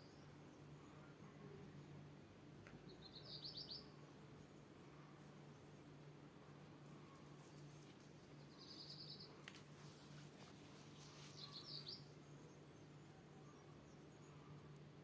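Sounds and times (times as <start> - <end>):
high bird chirping: 11.0 - 12.2.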